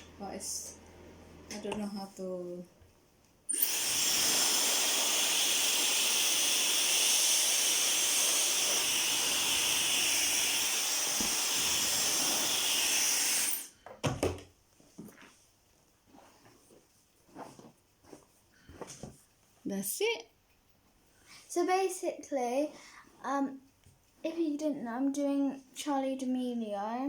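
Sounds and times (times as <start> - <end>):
hair dryer blowing air: 3.5 - 13.8.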